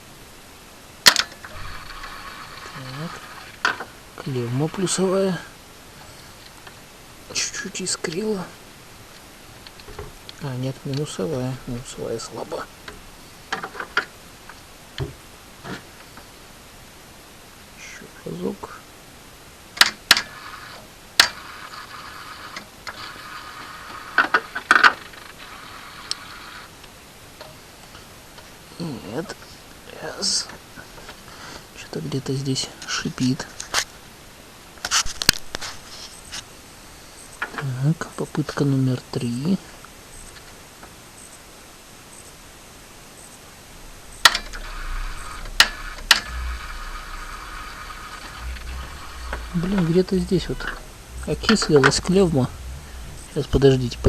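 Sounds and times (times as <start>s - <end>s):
low hum: 0.0s - 13.5s, 41.8s - 54.0s
steady whine: 0.0s - 19.7s, 39.2s - 54.0s
faint steady hiss: 0.0s - 54.0s
sharp clicks: 44.1s - 54.0s.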